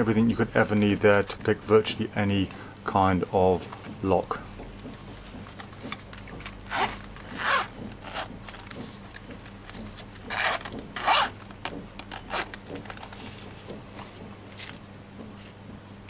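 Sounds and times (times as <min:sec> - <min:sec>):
zipper being pulled: 0:06.7 - 0:08.4, 0:10.2 - 0:11.4, 0:12.2 - 0:12.6.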